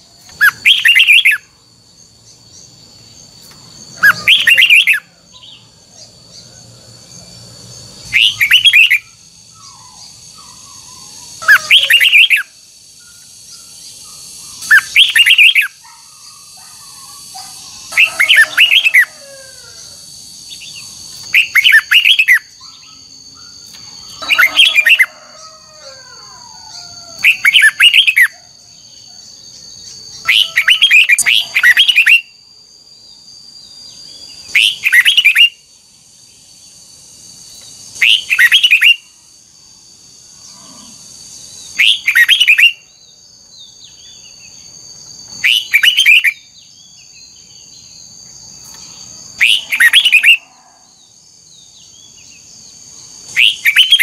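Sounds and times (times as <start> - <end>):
steady high-pitched hum: 0.0 - 54.0
bulbul singing rapid phrases: 4.0 - 5.7, 8.0 - 9.2, 30.2 - 32.3.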